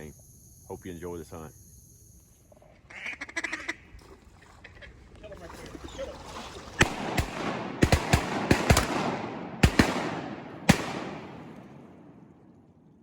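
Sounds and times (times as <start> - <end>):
echoing shotgun shots: 6.8 - 12.5.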